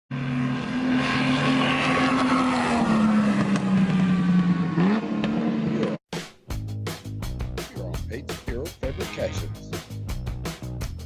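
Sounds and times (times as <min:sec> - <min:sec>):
race car engine revving: 0:00.1 - 0:06.0.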